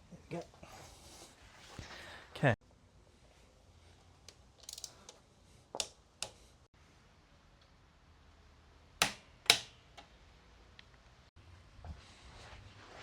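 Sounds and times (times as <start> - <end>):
hand tools and metal parts clicking: 4.2 - 6.4.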